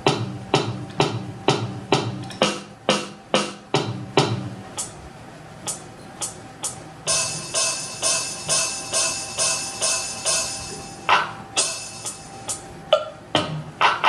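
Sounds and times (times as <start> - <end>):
electronic keyboard drum hits: 0.0 - 5.0, 5.6 - 14.0
jingling percussion hits: 7.1 - 12.6.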